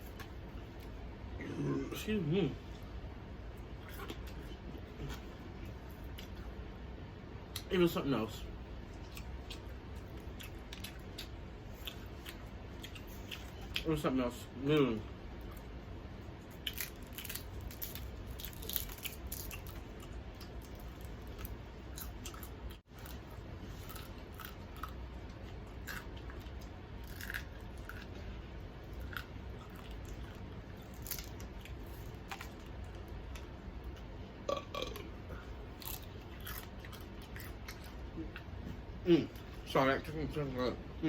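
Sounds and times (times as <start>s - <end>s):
low background hum: 0.0s - 41.0s
crunchy chewing: 8.9s - 13.9s, 16.4s - 35.0s, 35.7s - 39.6s.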